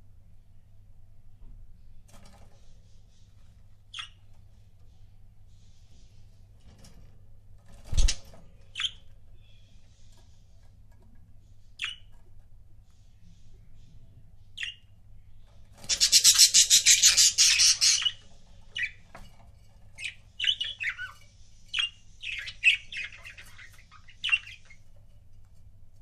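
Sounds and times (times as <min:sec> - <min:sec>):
budgerigars chirping: 0:15.8 - 0:19.0, 0:20.0 - 0:24.8.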